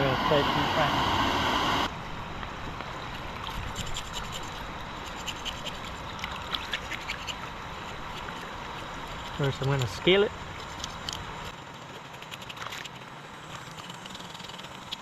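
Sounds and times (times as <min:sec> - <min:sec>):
loud steady noise: 0:00.0 - 0:01.9.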